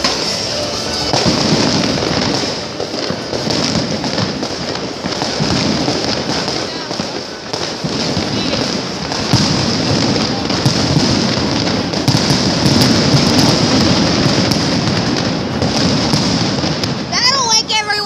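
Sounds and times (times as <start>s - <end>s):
steady high hiss: 0.0s - 3.4s
fireworks crackling and popping: 0.0s - 18.0s.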